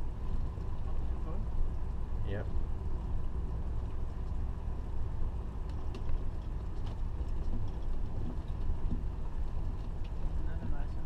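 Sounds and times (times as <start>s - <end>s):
motorhome engine rumble: 0.0s - 11.0s
faint clicks and rattles: 5.6s - 11.0s.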